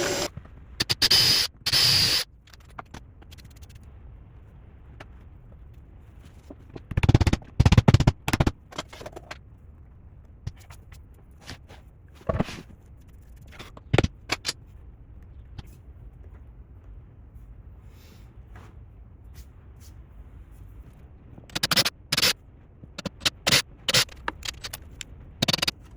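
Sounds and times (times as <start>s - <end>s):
rapid rattling clicks: 21.5s - 22.4s, 23.0s - 25.8s.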